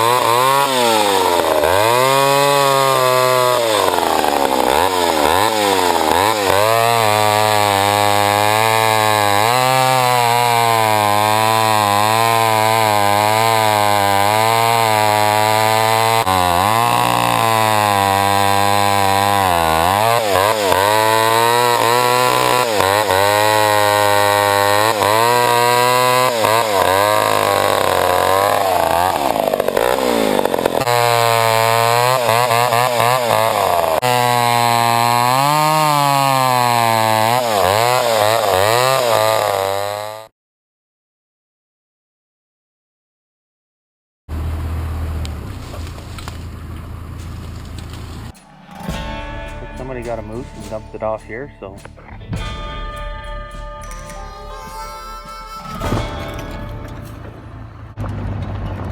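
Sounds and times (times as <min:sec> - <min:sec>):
chainsaw running hard: 0:00.0 - 0:40.3.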